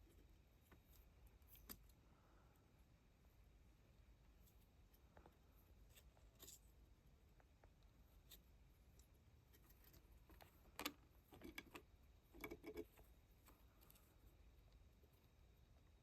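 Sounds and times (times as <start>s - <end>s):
hamster gnawing on wood: 7.3s - 14.1s.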